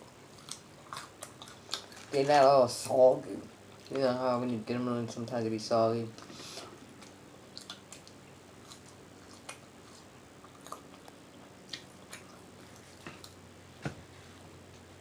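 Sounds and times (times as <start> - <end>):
mouth chewing sounds: 0.0 - 2.4, 6.2 - 13.4.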